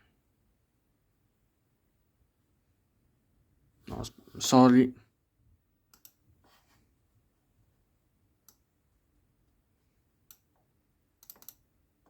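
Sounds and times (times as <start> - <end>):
faint clicks: 5.9 - 6.2, 8.4 - 8.6, 11.2 - 11.6.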